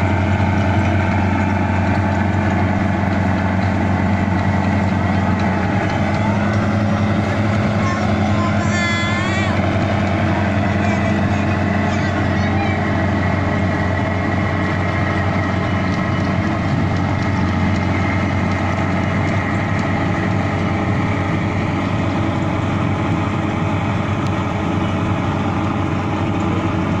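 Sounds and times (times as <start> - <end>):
harvesting machine engine drone: 0.0 - 27.0.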